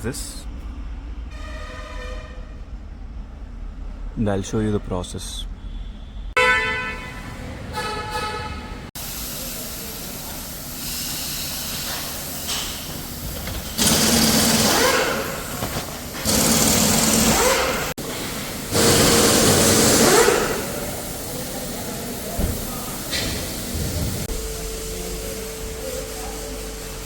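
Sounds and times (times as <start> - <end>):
small motor tool running: 13.7 - 15.6, 16.2 - 17.9.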